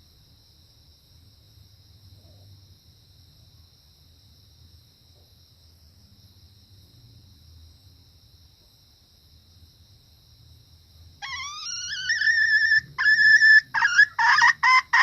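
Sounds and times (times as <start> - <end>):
insect trilling: 11.2 - 15.0
junglefowl calling: 11.2 - 15.0.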